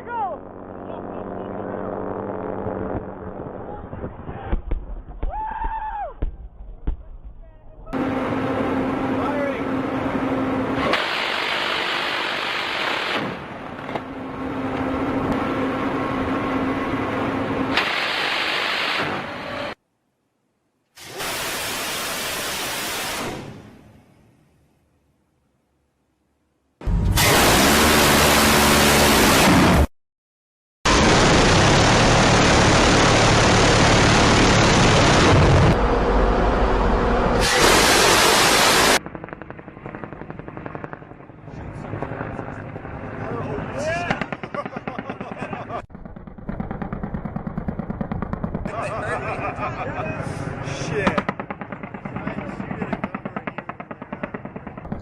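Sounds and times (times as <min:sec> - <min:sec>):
vehicle engine humming: 0:00.0 - 0:03.8, 0:07.9 - 0:17.8, 0:31.1 - 0:37.5
loud roaring noise: 0:00.0 - 0:04.3, 0:08.0 - 0:19.8, 0:26.8 - 0:29.9, 0:30.9 - 0:44.2
minigun buzzing roar: 0:00.2 - 0:03.7, 0:26.9 - 0:29.9, 0:30.9 - 0:39.0
fast crackle of gunfire: 0:37.4 - 0:42.2, 0:44.1 - 0:49.0, 0:51.1 - 0:55.0.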